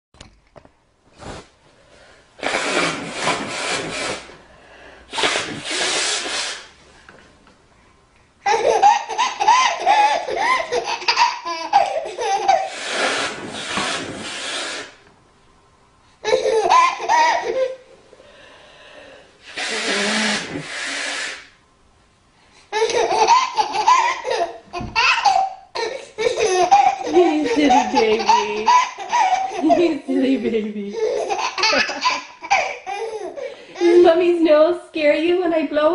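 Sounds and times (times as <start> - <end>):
woman blowing her nose: 1.2 - 1.6, 2.4 - 6.8, 12.5 - 15.0, 19.4 - 21.6, 25.9 - 30.1
baby laughing: 8.4 - 13.3, 16.2 - 17.8, 22.7 - 34.2.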